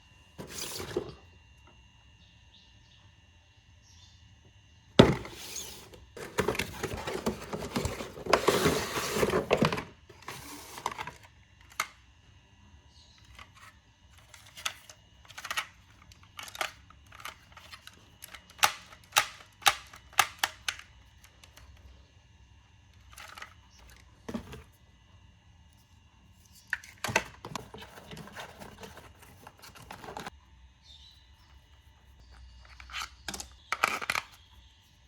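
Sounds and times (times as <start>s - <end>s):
packaging rustling and crinkling: 5.2s - 11.8s.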